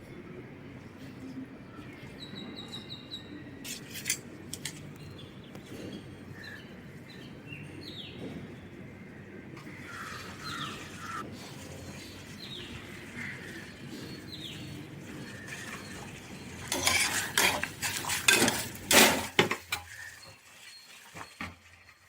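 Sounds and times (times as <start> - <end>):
birds chirping: 0.0 - 18.9
metal utensils clinking on pot: 15.7 - 20.1.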